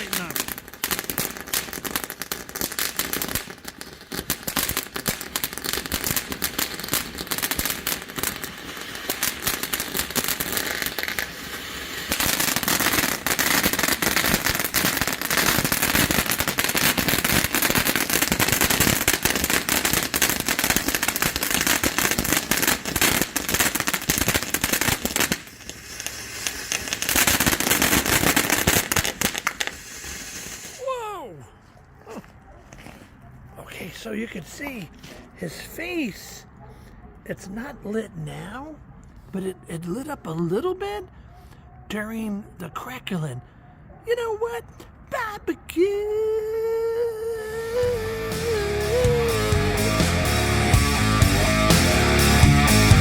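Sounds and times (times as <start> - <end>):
firework fountain crackling sparks: 0.0 - 31.2, 45.8 - 53.0.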